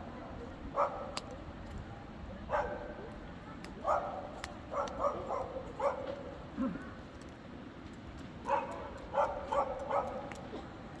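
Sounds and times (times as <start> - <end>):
dog barking: 0.8 - 1.2, 2.5 - 2.9, 3.8 - 6.2, 8.5 - 10.3.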